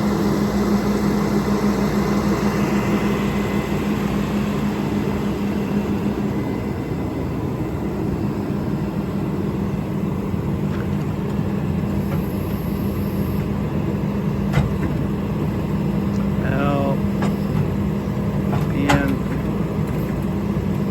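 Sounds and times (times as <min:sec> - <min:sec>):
engine running steadily: 0:00.0 - 0:20.9.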